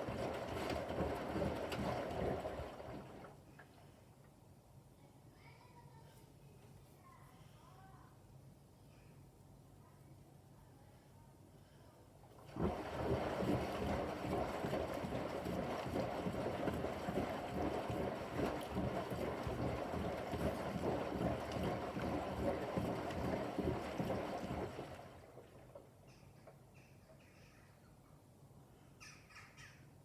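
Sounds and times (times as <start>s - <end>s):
washing machine drum tumbling: 0.0s - 3.3s, 12.5s - 25.2s
water sloshing: 0.0s - 3.4s, 12.4s - 25.9s.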